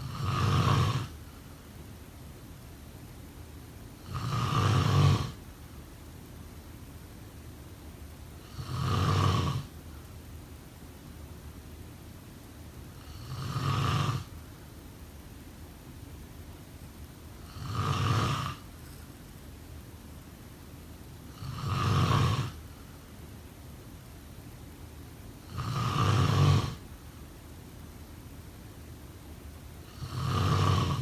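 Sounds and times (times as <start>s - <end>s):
person snoring: 0.0s - 1.2s, 4.0s - 5.4s, 8.4s - 9.7s, 13.0s - 14.3s, 17.4s - 18.7s, 21.3s - 22.6s, 25.5s - 26.8s, 29.9s - 31.0s
faint steady hiss: 0.0s - 31.0s.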